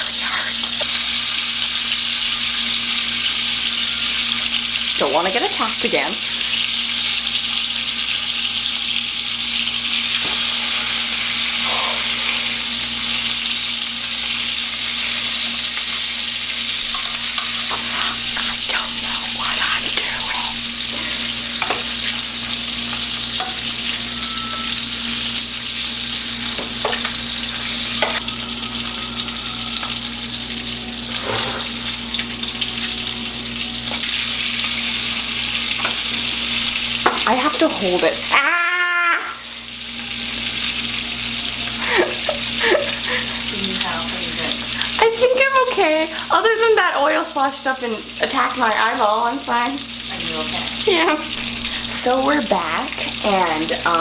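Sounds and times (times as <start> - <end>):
steady low hum: 0.0 - 38.3
steak sizzling in a pan: 0.0 - 54.0.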